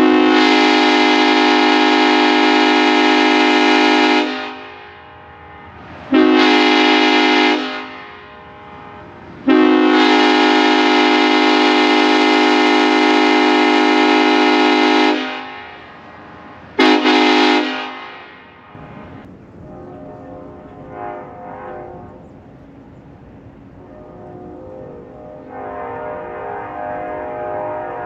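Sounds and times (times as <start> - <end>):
locomotive air horn blasts: 0.0 - 18.6, 19.7 - 22.2, 24.0 - 28.0.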